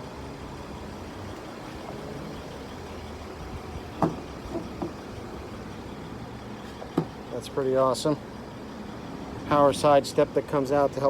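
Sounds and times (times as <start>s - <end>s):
vehicle idling rumble: 0.0s - 11.0s
light knocks: 4.0s - 5.0s, 6.8s - 7.2s.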